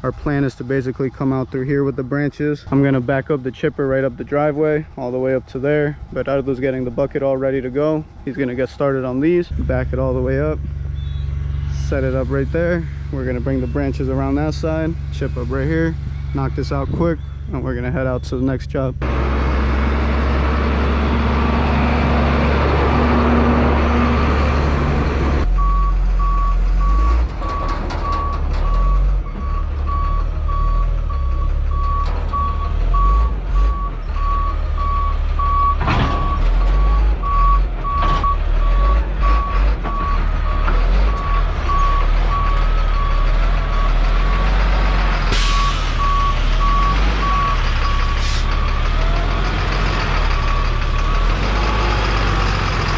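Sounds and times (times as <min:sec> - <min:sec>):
diesel engine running: 0:00.0 - 0:52.9
back-up alarm beeping: 0:10.9 - 0:11.7, 0:28.1 - 0:44.0, 0:45.6 - 0:48.2.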